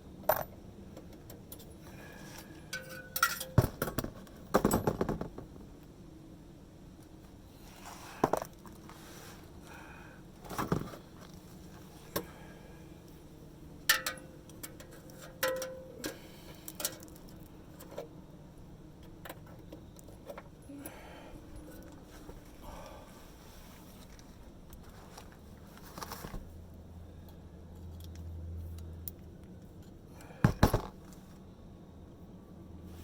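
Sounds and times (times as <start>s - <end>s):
metal clinks of tools and parts: 1.5s - 5.1s, 13.9s - 18.1s.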